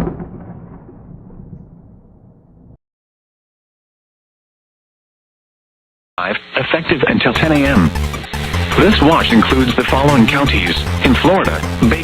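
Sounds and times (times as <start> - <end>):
thunder rumbling: 0.0 - 2.8.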